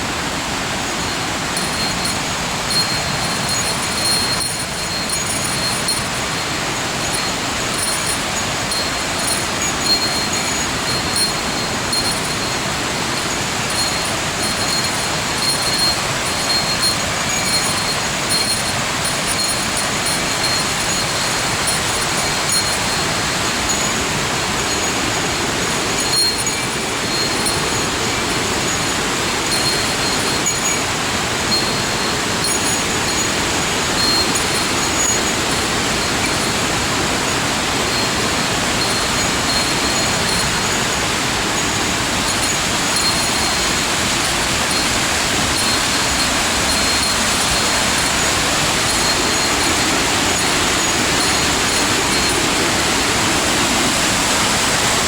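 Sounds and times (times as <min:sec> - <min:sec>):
waterfall rushing: 0:00.0 - 0:55.0
faint thin high tones: 0:01.6 - 0:23.1.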